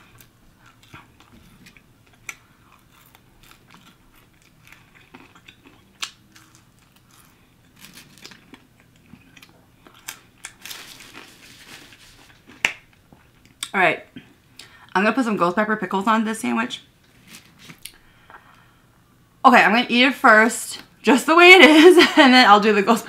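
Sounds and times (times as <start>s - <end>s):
person chewing food: 0.0s - 14.7s.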